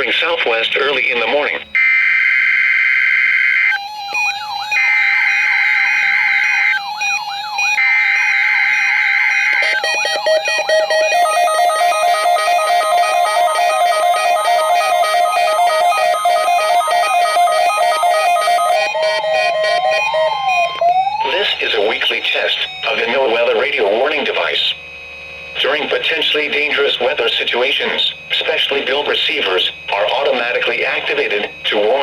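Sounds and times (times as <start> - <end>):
screeching digital data bursts: 9.1 - 18.9
warbling electronic alert tone: 9.3 - 21.7.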